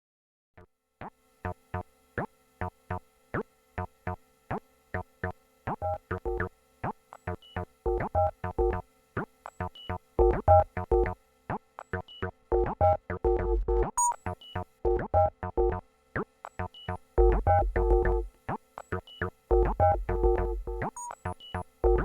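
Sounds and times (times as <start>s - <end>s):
synthesizer plucked notes: 12.5s - 13.9s, 17.2s - 18.3s, 19.5s - 21.2s.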